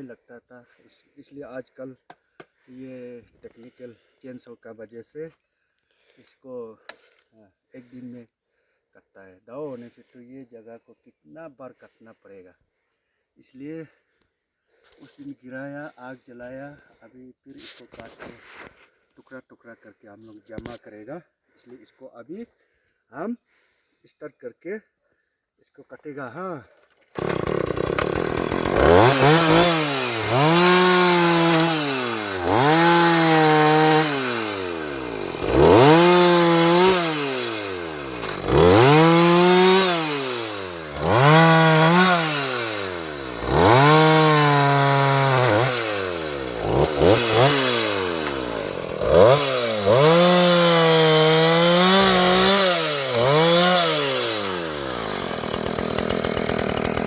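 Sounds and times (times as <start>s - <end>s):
chainsaw revving: 27.2s - 57.0s.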